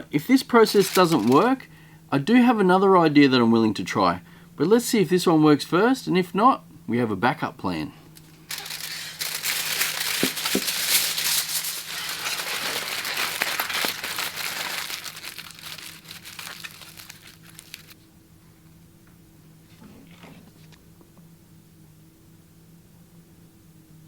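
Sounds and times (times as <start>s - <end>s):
aluminium foil being scrunched: 0.5s - 1.6s, 8.2s - 18.0s.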